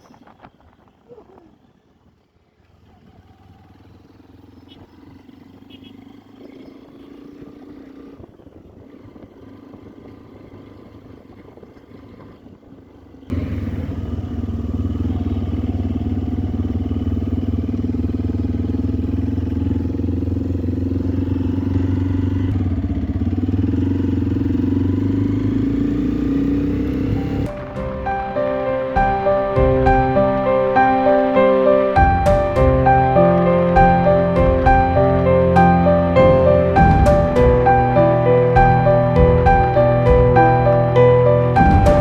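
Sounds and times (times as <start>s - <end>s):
road and wind noise: 0.0s - 42.0s
motorcycle engine running: 13.3s - 42.0s.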